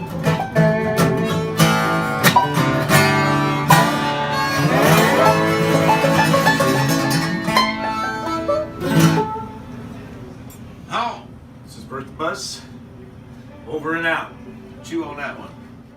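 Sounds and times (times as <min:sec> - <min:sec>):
acoustic bluegrass string band: 0:00.0 - 0:10.2.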